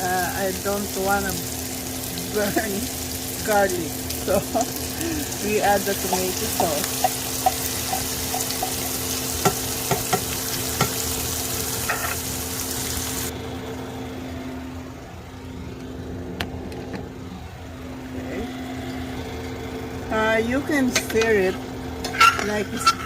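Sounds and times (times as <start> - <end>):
onions sizzling in a frying pan: 0.0 - 13.3
steady low hum: 0.0 - 23.0
utensil tapping a pan: 6.9 - 11.0.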